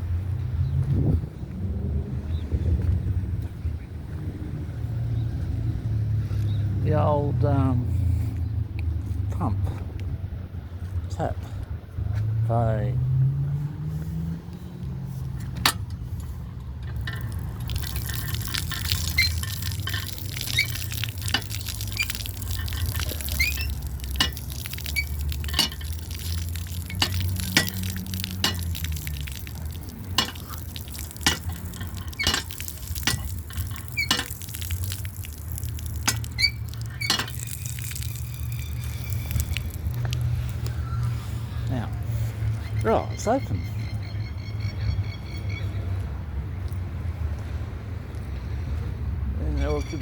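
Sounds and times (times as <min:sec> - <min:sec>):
water trickling from tap: 0:16.8 - 0:40.8.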